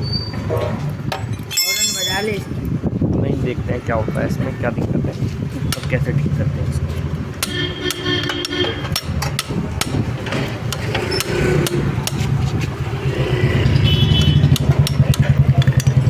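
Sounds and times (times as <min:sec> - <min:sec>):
motorbike engine idling: 0:05.6 - 0:16.0
tool clicks and knocks on metal: 0:07.4 - 0:12.7, 0:14.2 - 0:16.0.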